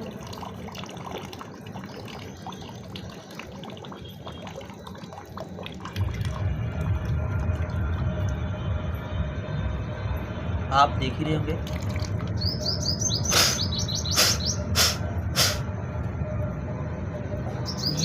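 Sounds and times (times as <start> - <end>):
water trickling and dripping: 0.0 - 9.4, 11.5 - 12.8
low rumble: 5.8 - 12.7, 14.6 - 18.0.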